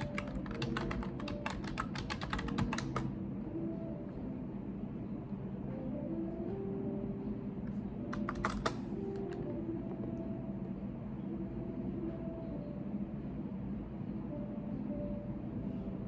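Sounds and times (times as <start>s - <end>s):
keyboard typing: 0.0s - 3.1s, 7.7s - 9.6s
low background hum: 0.0s - 16.0s.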